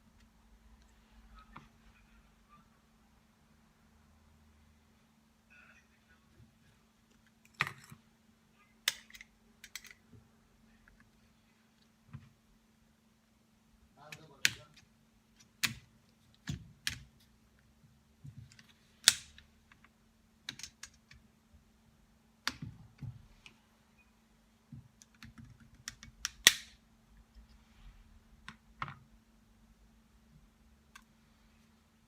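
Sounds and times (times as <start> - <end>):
faint steady hum: 0.0 - 32.0.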